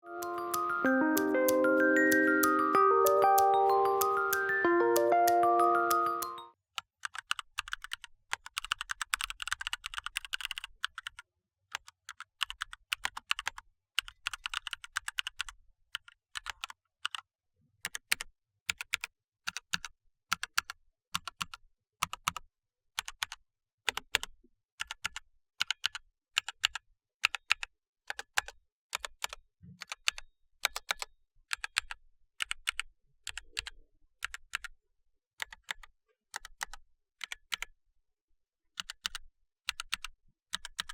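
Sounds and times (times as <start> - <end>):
mechanical keyboard typing: 0.1 - 6.5.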